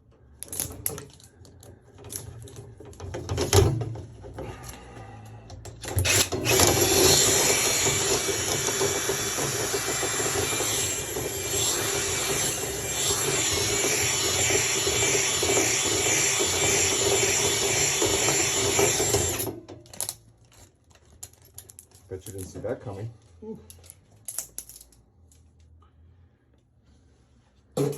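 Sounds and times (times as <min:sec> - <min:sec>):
vacuum motor running: 0:06.1 - 0:19.5.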